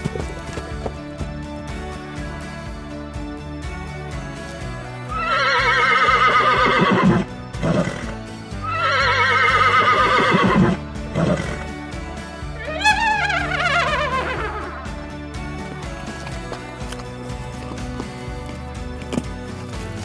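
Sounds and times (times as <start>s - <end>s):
background music: 0.0s - 20.0s
horse neighing: 5.1s - 11.7s, 12.6s - 14.9s.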